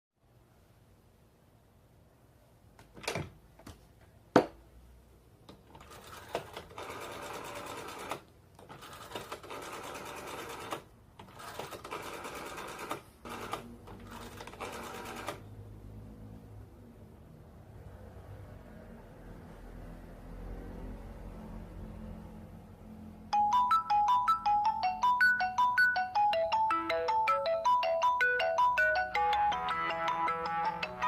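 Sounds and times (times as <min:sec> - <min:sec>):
telephone bell ringing: 0:23.4 - 0:31.0.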